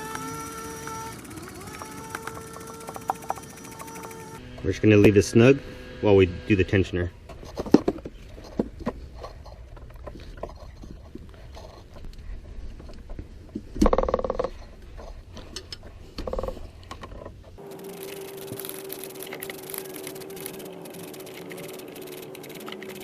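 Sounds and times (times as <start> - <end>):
ratchet wrench clicking: 17.8 - 23.0.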